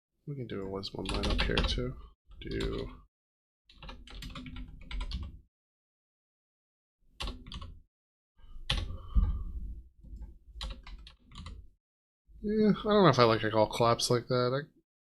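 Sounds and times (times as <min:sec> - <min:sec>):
typing on keyboard: 0:01.0 - 0:01.8, 0:02.4 - 0:02.9, 0:03.7 - 0:05.4, 0:07.2 - 0:07.8, 0:10.6 - 0:11.6.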